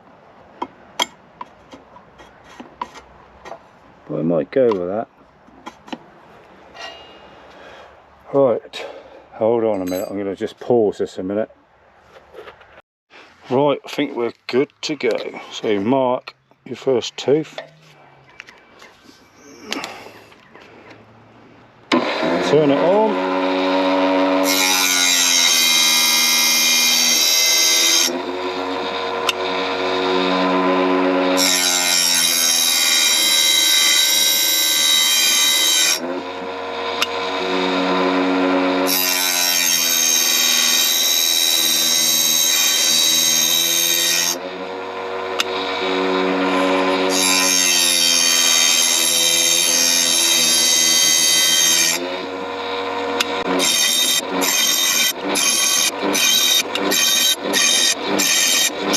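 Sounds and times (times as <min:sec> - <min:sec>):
electric motor humming: 0:21.9 - 0:27.0, 0:27.7 - 0:31.6, 0:35.9 - 0:47.9, 0:48.9 - 0:58.9
grinding wheel on saw blade: 0:21.9 - 0:58.9.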